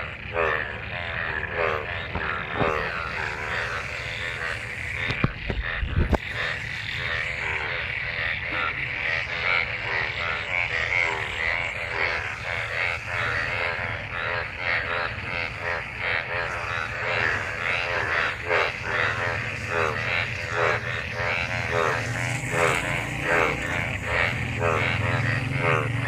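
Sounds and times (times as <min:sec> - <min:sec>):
frogs croaking in chorus: 0:00.0 - 0:26.0.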